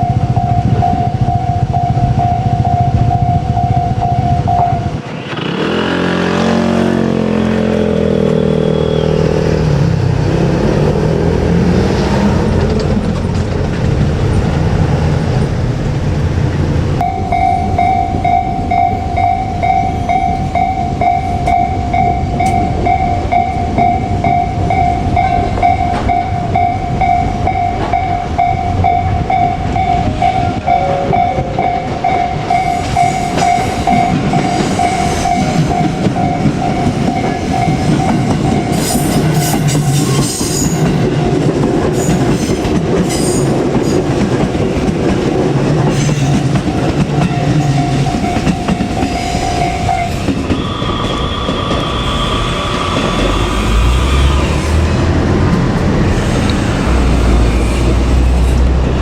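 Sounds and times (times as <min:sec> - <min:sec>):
level-crossing warning bell: 0:00.0 - 0:05.2, 0:17.0 - 0:54.4
electric train running: 0:00.0 - 0:59.0.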